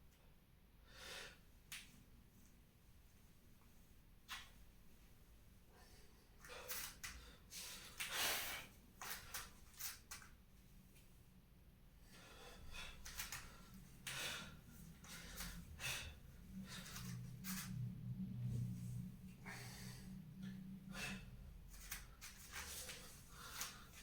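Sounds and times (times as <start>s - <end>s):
person breathing hard: 5.8s - 8.8s, 12.0s - 17.4s, 19.3s - 21.9s, 22.5s - 24.0s.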